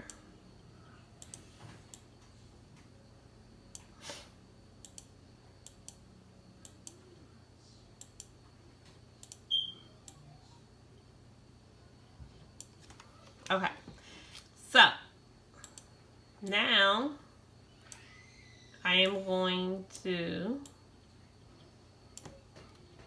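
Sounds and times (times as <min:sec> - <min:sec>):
faint low hum: 0:00.0 - 0:23.0
computer mouse clicking: 0:01.2 - 0:02.1, 0:04.8 - 0:06.0, 0:08.0 - 0:08.3, 0:09.2 - 0:09.4, 0:15.6 - 0:15.9.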